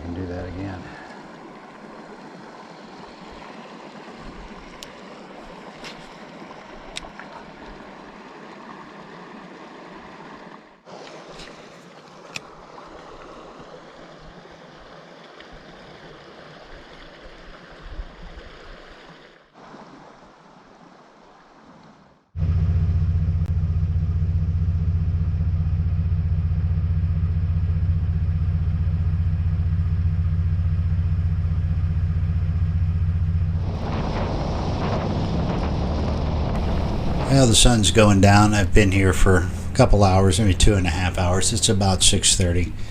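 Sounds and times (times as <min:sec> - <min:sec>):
creek water rushing: 0:00.0 - 0:22.3, 0:33.6 - 0:42.9
loud steady low drone: 0:22.4 - 0:42.9.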